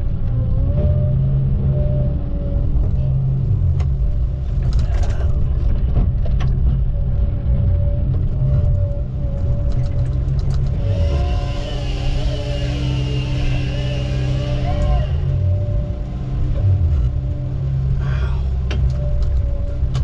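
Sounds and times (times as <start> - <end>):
vehicle engine rumble: 0.0 - 20.0
wavering drone: 7.0 - 20.0.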